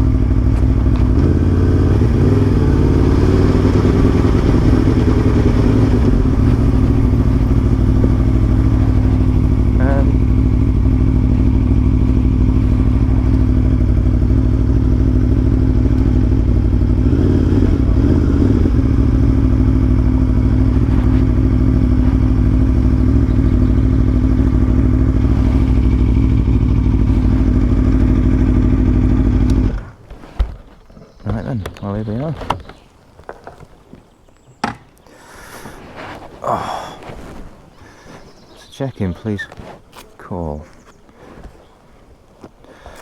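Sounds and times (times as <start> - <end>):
motorcycle engine running: 0.0 - 33.7.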